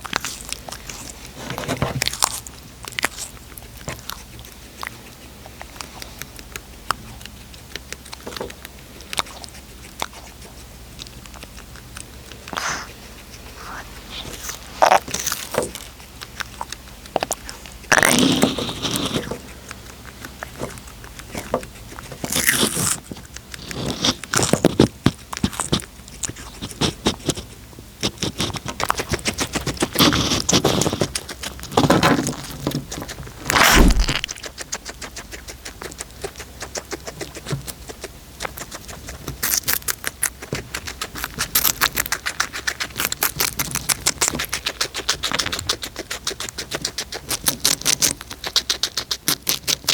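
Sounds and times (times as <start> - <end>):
cat crunching food: 0.0 - 49.9
scraping rustles: 0.3 - 2.4, 17.6 - 19.6.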